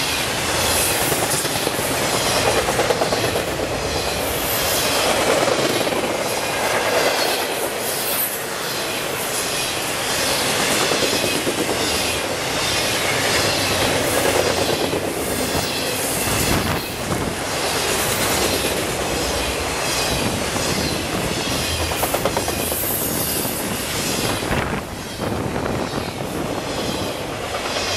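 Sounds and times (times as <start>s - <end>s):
train wheels clacking over rails: 0.0s - 27.9s.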